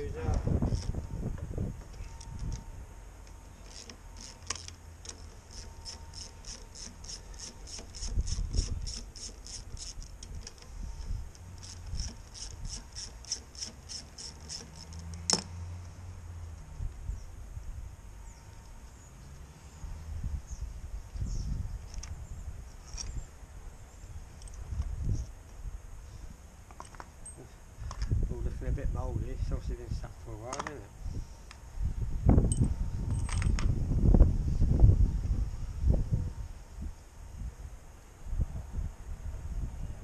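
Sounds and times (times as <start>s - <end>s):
ratchet wrench clicking: 3.6s - 10.7s, 11.3s - 15.4s.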